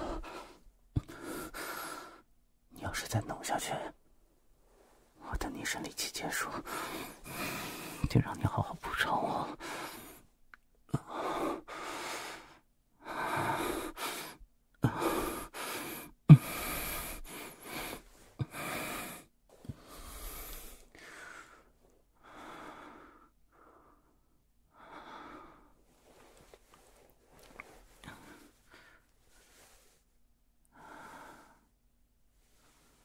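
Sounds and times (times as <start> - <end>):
man breathing: 0.0 - 2.3, 6.4 - 8.1, 9.4 - 10.3, 10.9 - 30.1, 30.7 - 31.8.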